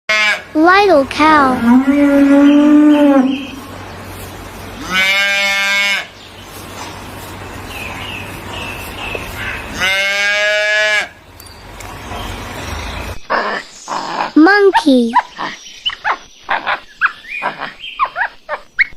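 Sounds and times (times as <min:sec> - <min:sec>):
calf mooing: 0:00.1 - 0:00.5, 0:01.6 - 0:03.7, 0:04.8 - 0:06.1, 0:09.7 - 0:11.2.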